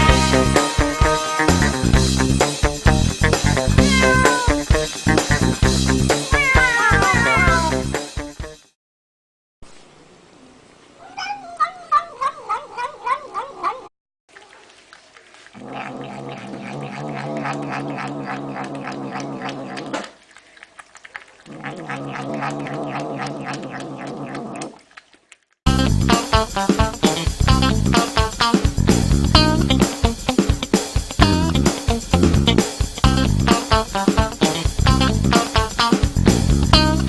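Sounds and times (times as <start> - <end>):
guitar music: 0.0 - 8.0, 25.7 - 28.7, 29.3 - 36.0
cat meowing and yowling: 3.8 - 4.7, 6.2 - 7.8, 11.0 - 13.9.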